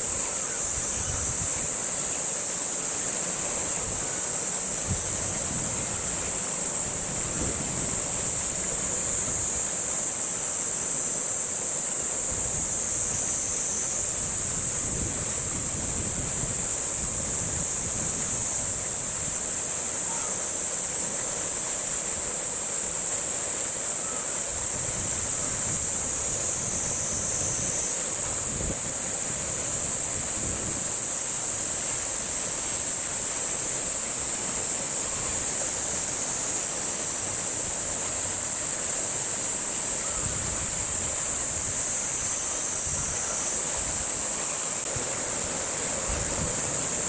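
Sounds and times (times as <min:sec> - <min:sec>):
cicadas droning: 0:00.0 - 0:47.0
wind rumble on microphone: 0:00.7 - 0:01.7, 0:04.8 - 0:06.3, 0:06.9 - 0:09.6, 0:14.0 - 0:19.4, 0:24.6 - 0:31.0, 0:40.1 - 0:41.8, 0:42.8 - 0:44.2, 0:45.9 - 0:47.0.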